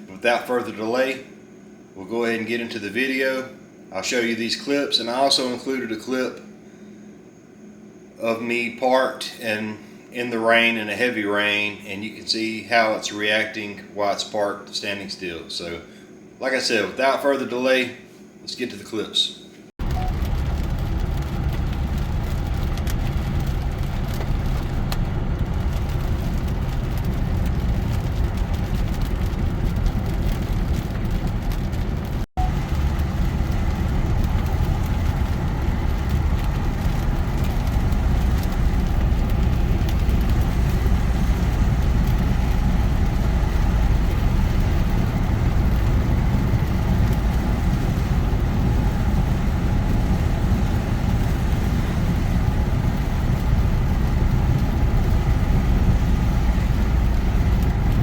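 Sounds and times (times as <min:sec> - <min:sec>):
road and engine noise in car: 0:19.8 - 0:58.0.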